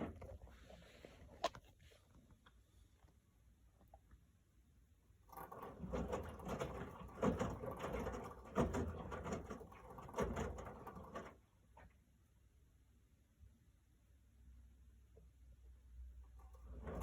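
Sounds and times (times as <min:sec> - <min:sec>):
washing machine drum rattling: 0:05.3 - 0:11.4, 0:16.4 - 0:17.0.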